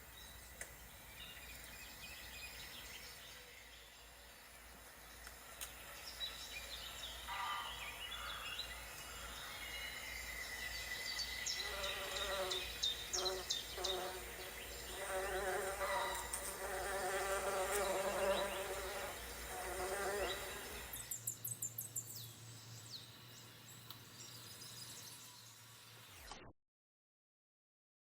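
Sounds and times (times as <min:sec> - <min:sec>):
birds chirping: 0:00.0 - 0:26.2
flying insect buzzing: 0:11.4 - 0:21.2.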